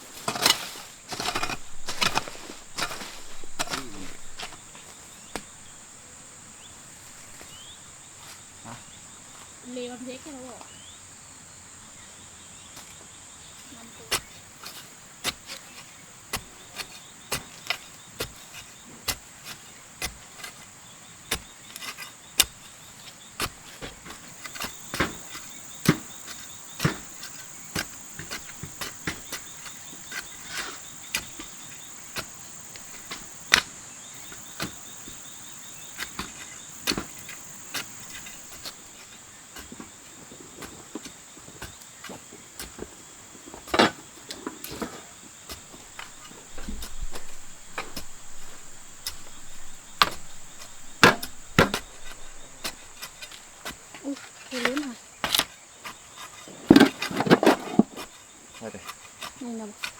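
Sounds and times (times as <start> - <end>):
high insect buzz: 0.1 - 11.7, 24.2 - 40.2
sharp knocks: 45.7 - 53.5.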